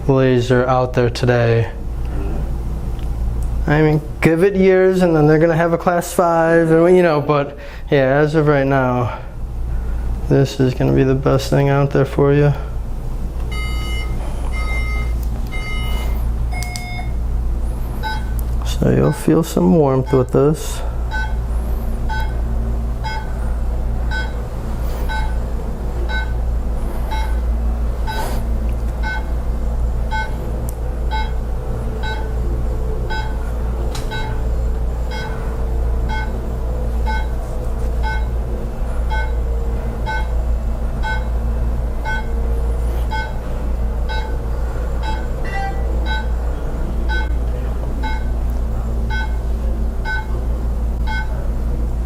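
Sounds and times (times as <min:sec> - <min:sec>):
steady low hum: 0:00.0 - 0:52.0
laser device beeping: 0:13.5 - 0:17.2, 0:18.0 - 0:18.4, 0:19.0 - 0:19.4, 0:21.1 - 0:21.5, 0:22.1 - 0:22.4, 0:23.0 - 0:23.4, 0:24.1 - 0:24.4, 0:25.0 - 0:25.4, 0:26.0 - 0:26.4, 0:27.1 - 0:28.4, 0:29.0 - 0:29.4, 0:30.1 - 0:30.4, 0:31.1 - 0:31.4, 0:32.0 - 0:32.4, 0:33.1 - 0:33.5, 0:34.1 - 0:34.5, 0:35.1 - 0:35.4, 0:36.1 - 0:36.4, 0:37.0 - 0:37.4, 0:38.0 - 0:38.4, 0:39.1 - 0:40.4, 0:41.0 - 0:41.4, 0:42.0 - 0:42.4, 0:43.1 - 0:43.5, 0:44.1 - 0:46.4, 0:47.1 - 0:47.4, 0:48.0 - 0:48.4, 0:49.1 - 0:50.4, 0:51.0 - 0:51.4.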